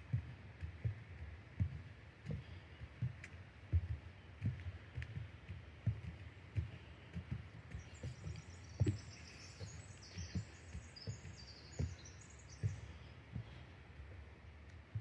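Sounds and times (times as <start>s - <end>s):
footsteps on trail: 3.6s - 14.3s.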